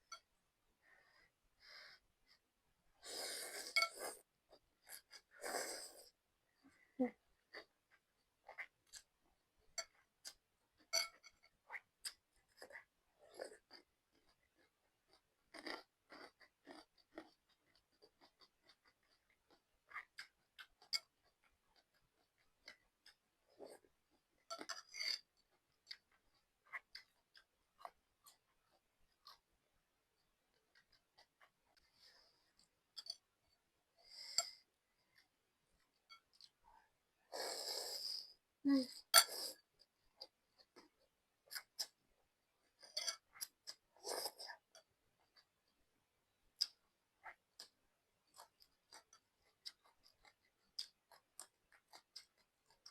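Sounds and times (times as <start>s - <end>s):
mouth clicks of chewing: 11.0s - 23.8s, 46.6s - 52.9s
eating clicks and smacks: 46.5s - 52.9s.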